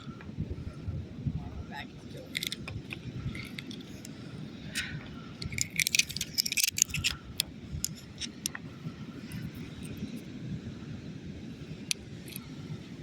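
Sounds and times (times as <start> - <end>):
seashells clicking and rattling: 2.2 - 8.6, 11.8 - 12.5.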